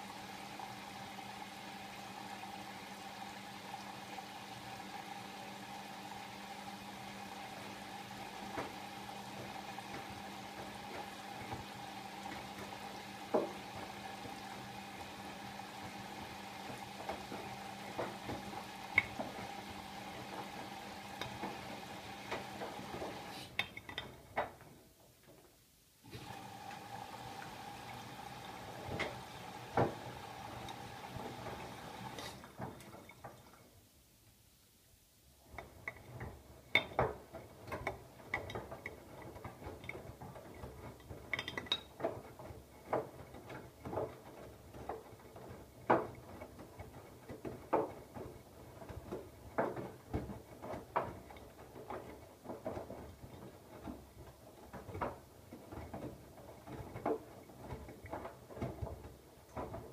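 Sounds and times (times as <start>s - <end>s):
water running into machine: 0.0s - 23.5s, 26.1s - 33.6s
washing machine hum: 0.0s - 25.0s, 26.0s - 34.0s, 35.2s - 59.9s
small clicks and knocks: 35.5s - 59.9s.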